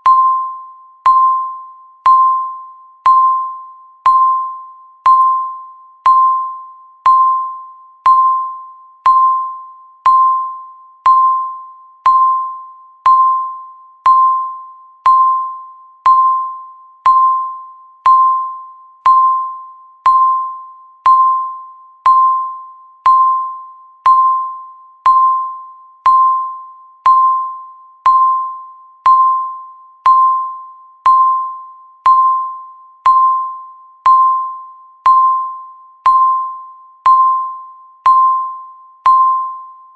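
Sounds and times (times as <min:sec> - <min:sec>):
electronic countdown timer beeps: 0:00.0 - 0:39.9.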